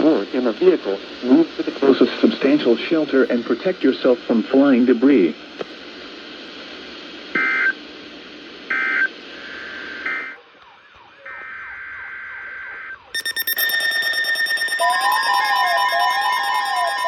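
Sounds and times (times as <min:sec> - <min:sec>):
radio hiss: 0:00.0 - 0:10.4
loud multi-tone alert: 0:13.2 - 0:17.0
warbling digital data bursts: 0:13.2 - 0:17.0.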